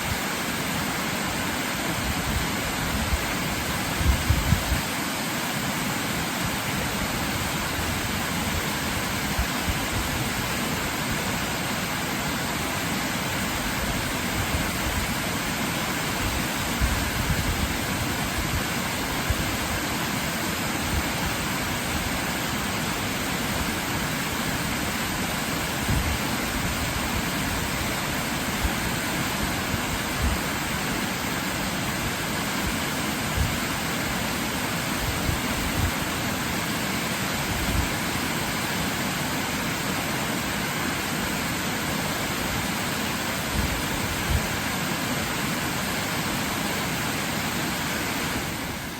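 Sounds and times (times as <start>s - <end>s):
waterfall rushing: 0.0s - 48.9s.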